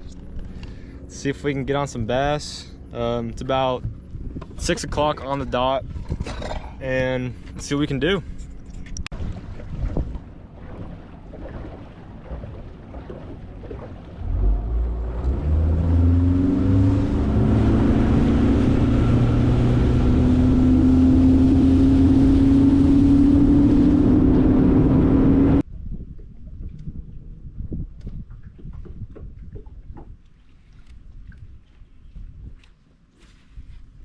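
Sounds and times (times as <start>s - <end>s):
outboard motor throttling up: 0.0s - 25.6s.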